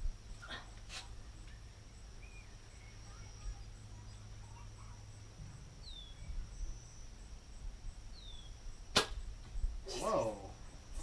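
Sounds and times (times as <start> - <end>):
high insect drone: 0.0 - 11.0
soft bird chirps: 0.4 - 7.4, 8.0 - 8.6.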